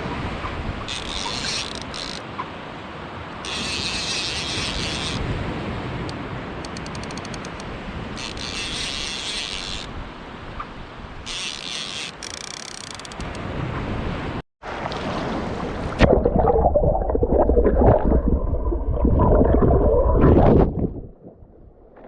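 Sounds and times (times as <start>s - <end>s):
fishing reel drag: 0.9s - 2.2s, 3.4s - 5.2s, 6.6s - 9.9s, 11.2s - 13.3s
reel ratchet clicks: 0.9s - 2.2s, 3.4s - 5.2s, 6.6s - 9.9s, 11.3s - 13.4s.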